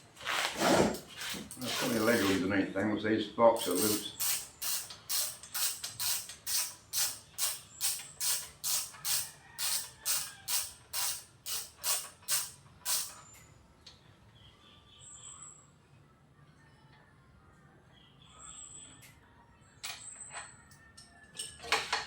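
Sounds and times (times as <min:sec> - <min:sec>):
socket ratchet clicking: 0:03.6 - 0:13.2.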